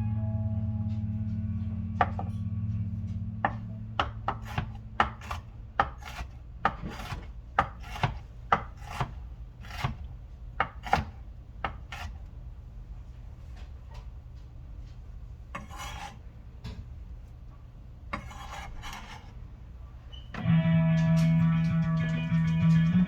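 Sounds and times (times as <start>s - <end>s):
knife chopping on a board: 3.4s - 12.2s, 15.6s - 16.8s, 18.1s - 19.3s
knife scraping on a board: 3.5s - 12.3s, 15.5s - 16.3s, 18.1s - 19.4s.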